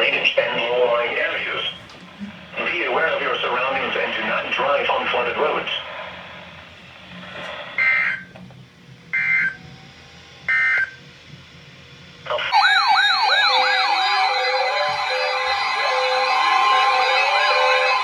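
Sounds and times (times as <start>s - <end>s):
siren-like alarm: 10.5s - 11.0s, 12.5s - 18.0s
digital data bursts: 12.5s - 18.0s.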